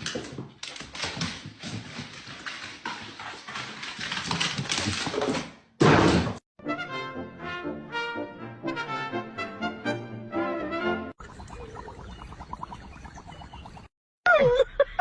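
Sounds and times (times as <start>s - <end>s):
dog moving about: 0.0s - 5.5s
brass music: 6.6s - 11.2s.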